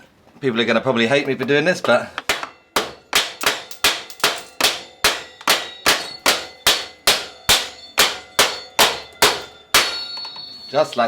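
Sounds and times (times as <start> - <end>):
hammer striking metal pipe: 2.2 - 10.5.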